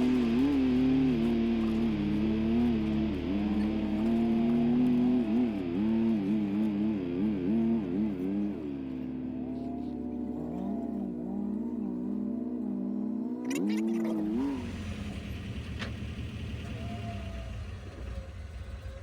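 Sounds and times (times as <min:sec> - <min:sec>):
electric guitar sliding notes: 0:00.0 - 0:08.7
off-road vehicle engine running: 0:00.0 - 0:19.0
steady low tones: 0:00.0 - 0:19.0.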